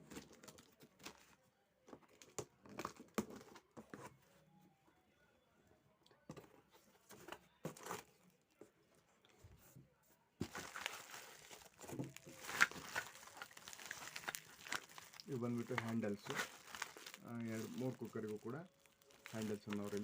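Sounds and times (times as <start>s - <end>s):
packaging rustling and crinkling: 0.0s - 1.4s, 10.4s - 20.0s.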